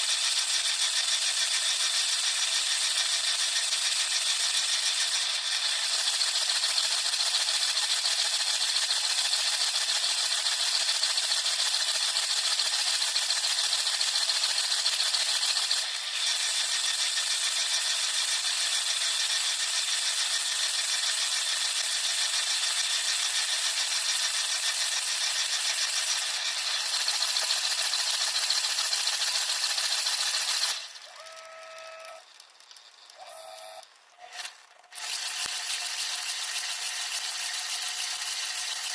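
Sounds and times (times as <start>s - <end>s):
short electronic tones: 31.0s - 32.2s, 33.2s - 33.8s.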